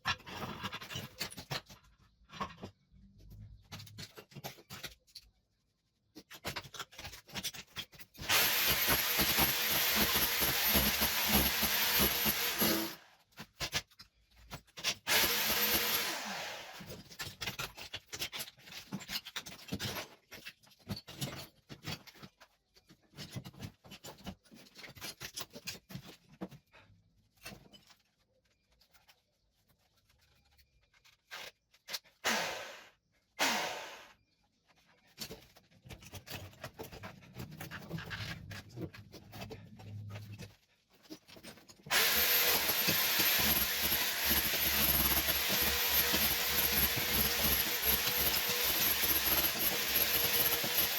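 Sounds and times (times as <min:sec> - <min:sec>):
scraping and tapping on tiles: 0:06.1 - 0:08.2, 0:16.9 - 0:32.1
electric power tool running: 0:08.3 - 0:13.0, 0:15.1 - 0:16.9, 0:41.9 - 0:50.9.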